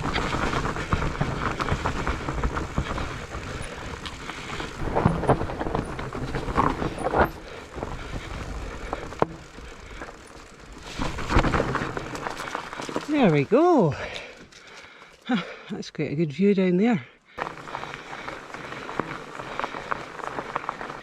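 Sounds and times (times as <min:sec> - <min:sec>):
bike knocks and rattles: 0:00.0 - 0:13.5
tyres rushing over dirt: 0:00.0 - 0:15.4, 0:17.4 - 0:21.0.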